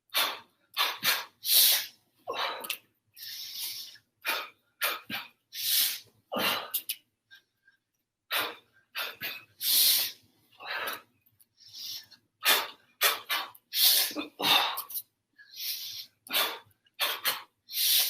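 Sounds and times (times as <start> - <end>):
forceful hissing exhalations: 5.5 - 6.1, 9.6 - 10.2, 15.5 - 18.0.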